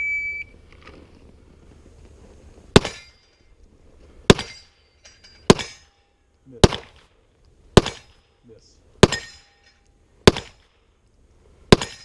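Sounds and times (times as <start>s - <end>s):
shot timer beep: 0.0s - 0.5s
pistol shots: 2.8s - 3.1s, 4.3s - 4.6s, 5.5s - 5.8s, 6.6s - 7.1s, 7.8s - 8.2s, 9.0s - 9.4s, 10.2s - 10.8s, 11.7s - 12.0s.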